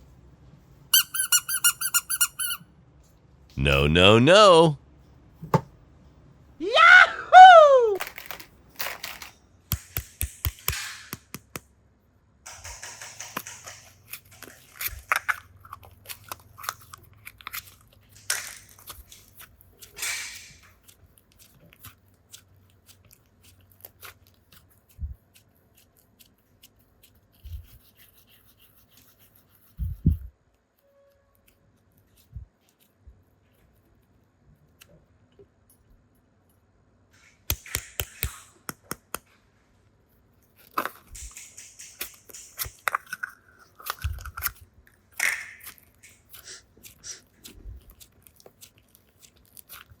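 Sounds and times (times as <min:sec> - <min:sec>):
plastic toys clicking and tapping: 0:08.0 - 0:11.6, 0:12.5 - 0:22.5, 0:37.5 - 0:39.3, 0:40.7 - 0:47.2.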